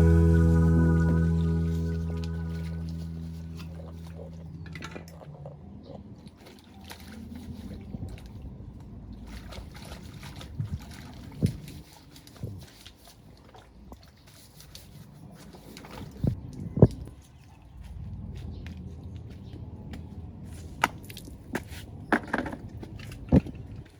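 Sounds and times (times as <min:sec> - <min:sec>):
water sloshing and trickling: 0:03.8 - 0:19.4, 0:22.6 - 0:23.9.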